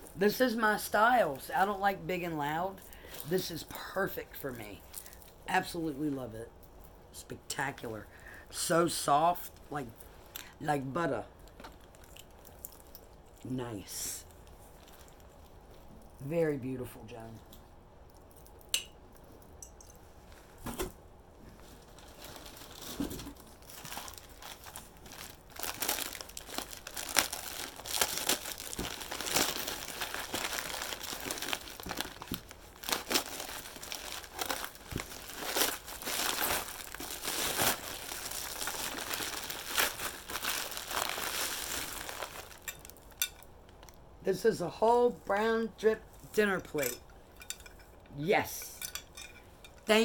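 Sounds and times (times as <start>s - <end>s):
packing wrap crinkling: 11.3s - 13.4s, 14.2s - 16.2s, 21.6s - 44.0s.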